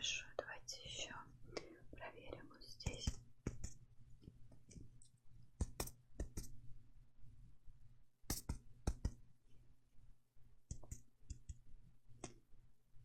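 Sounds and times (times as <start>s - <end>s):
fingertips tapping: 2.8s - 6.6s, 8.3s - 9.2s, 10.6s - 12.4s.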